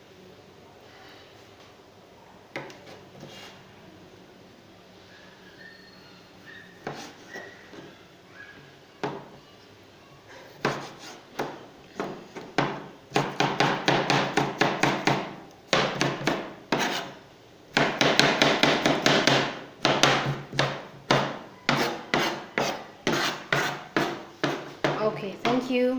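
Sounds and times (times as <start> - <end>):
knife chopping on cutting board: 6.8 - 7.2, 10.6 - 17.1, 17.7 - 25.6.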